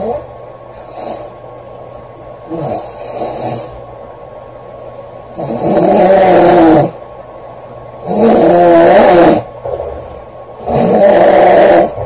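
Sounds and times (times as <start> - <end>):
woman snoring loudly: 5.4 - 7.0, 8.0 - 9.5, 10.6 - 12.0.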